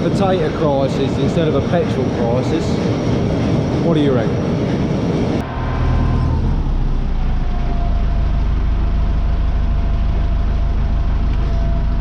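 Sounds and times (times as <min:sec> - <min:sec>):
farm machinery low drone: 0:00.0 - 0:12.0
thin steady whine: 0:03.4 - 0:12.0.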